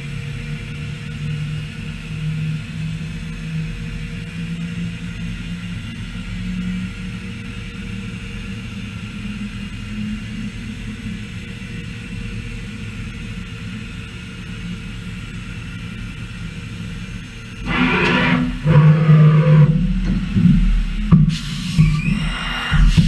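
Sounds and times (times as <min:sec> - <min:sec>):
machining centre hum: 0:00.0 - 0:23.0
loud machine sound: 0:16.8 - 0:23.0.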